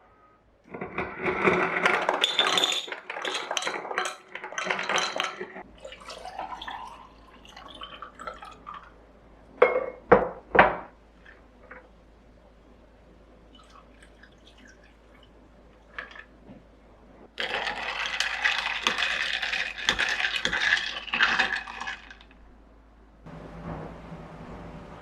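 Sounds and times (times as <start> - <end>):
dishes clattering: 0.7 - 7.0, 9.6 - 10.9.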